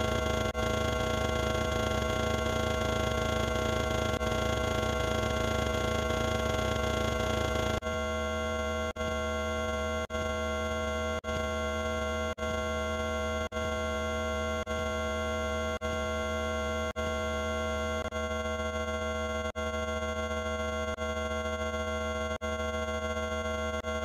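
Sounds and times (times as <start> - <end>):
electronic multi-pitch tone: 0.0 - 12.6.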